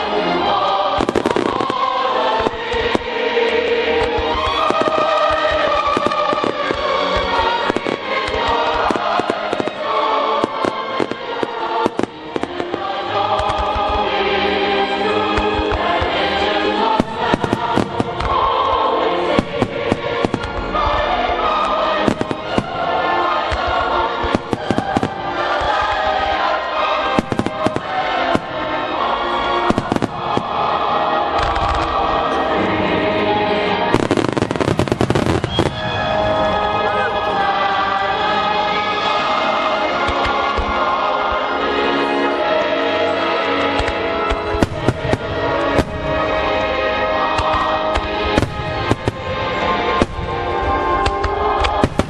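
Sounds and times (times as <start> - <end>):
fireworks bursting and crackling: 0.0 - 32.5, 33.3 - 42.1, 42.9 - 52.0
music with choir singing: 0.0 - 52.0.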